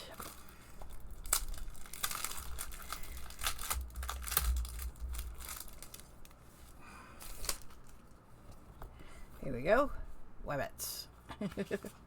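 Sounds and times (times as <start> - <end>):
packaging crinkling: 0.0 - 8.2.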